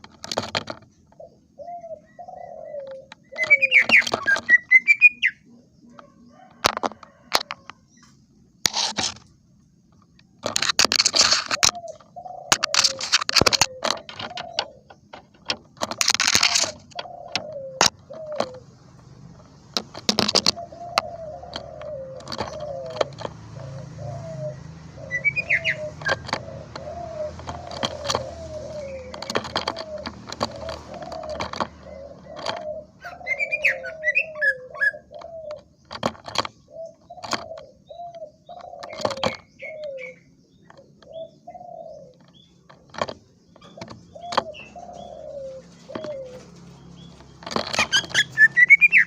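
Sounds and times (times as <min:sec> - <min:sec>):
bird harsh rasping call: 0:01.6 - 0:05.5, 0:20.4 - 0:36.0, 0:43.6 - 0:49.0
bird clicking notes: 0:02.8 - 0:05.4, 0:10.0 - 0:49.0
bird chirping high phrases: 0:03.3 - 0:05.5, 0:46.4 - 0:49.0
bird low whistled tones: 0:03.4 - 0:05.4.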